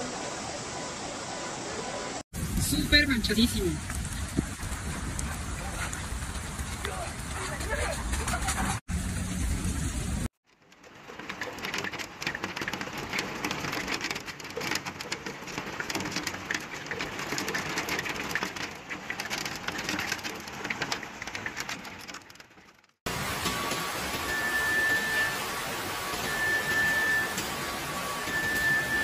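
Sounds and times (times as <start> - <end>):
heavy rain: 0.0 - 29.0
hailstones pelting: 10.5 - 29.0.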